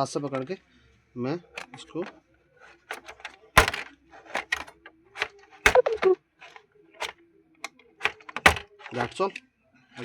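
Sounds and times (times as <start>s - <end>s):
plastic clicks and knocks: 2.7s - 9.1s.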